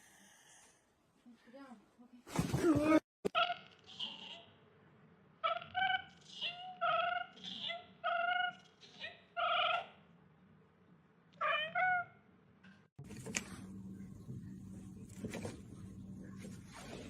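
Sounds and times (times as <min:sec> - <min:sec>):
cat meowing: 0:11.4 - 0:12.2.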